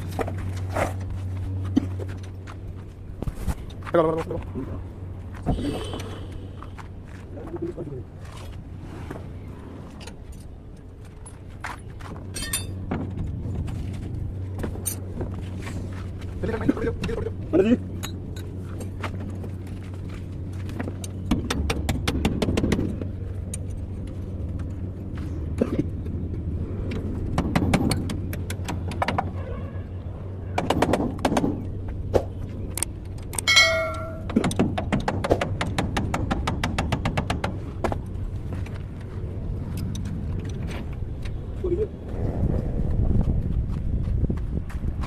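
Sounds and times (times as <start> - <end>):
metallic clinks and knocks: 12.3 - 12.8, 33.2 - 34.6
high-pitched tone: 33.5 - 34.3.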